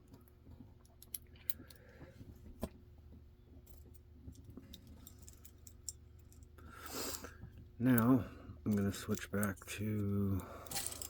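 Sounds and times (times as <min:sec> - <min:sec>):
small metallic clicks of lock picks: 0:00.8 - 0:01.9.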